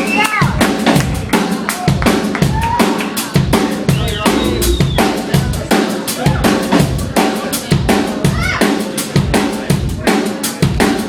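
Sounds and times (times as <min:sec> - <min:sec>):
bass: 0:00.0 - 0:08.6
drum kit beat: 0:00.7 - 0:10.0
sliding pitched tones: 0:04.0 - 0:05.6.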